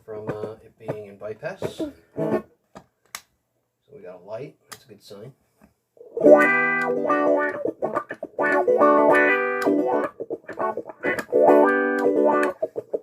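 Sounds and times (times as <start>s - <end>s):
electric guitar through wah pedal: 1.8s - 2.4s, 6.0s - 13.0s.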